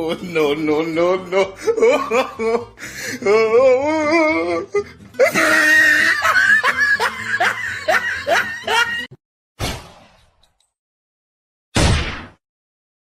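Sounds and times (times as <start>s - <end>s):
person laughing hard: 0.6s - 9.1s.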